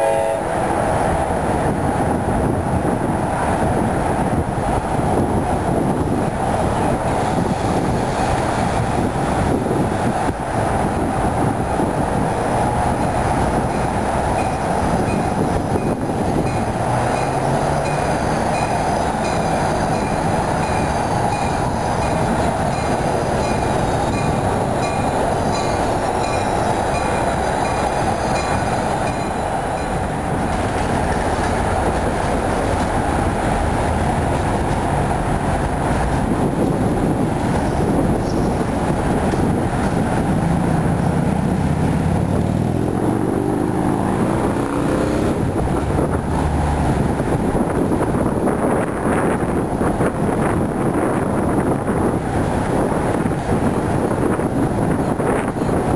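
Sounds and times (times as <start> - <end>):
train wheels rumbling on rail: 0.0 - 55.9.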